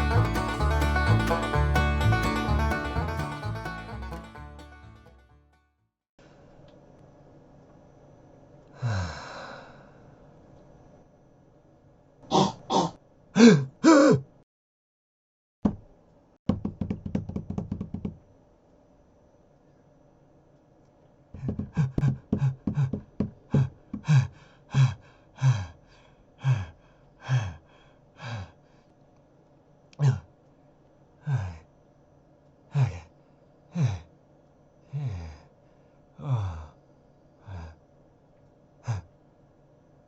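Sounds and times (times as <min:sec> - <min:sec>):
person gasping: 0:08.8 - 0:10.0, 0:12.3 - 0:14.2, 0:21.4 - 0:28.9, 0:30.0 - 0:30.2, 0:31.2 - 0:31.7, 0:32.7 - 0:33.1, 0:33.7 - 0:34.1, 0:34.9 - 0:35.5, 0:36.2 - 0:36.8, 0:37.4 - 0:37.8, 0:38.8 - 0:39.1.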